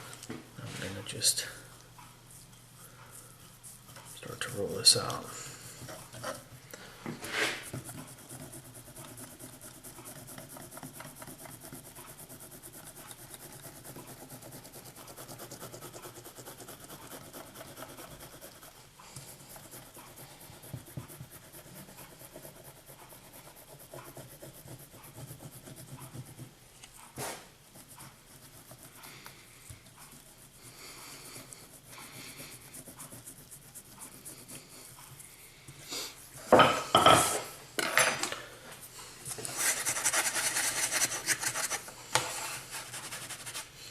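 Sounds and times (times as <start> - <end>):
rolling and rubbing paste: 2.3 - 26.6, 27.2 - 36.6.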